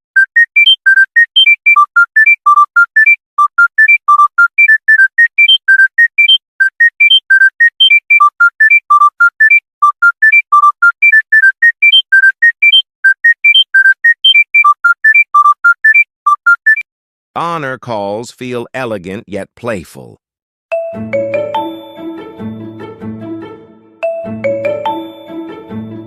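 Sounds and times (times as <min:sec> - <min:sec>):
phone ringtone beep melody: 0:00.2 - 0:16.8, 0:20.7 - 0:22.5, 0:24.0 - 0:25.9.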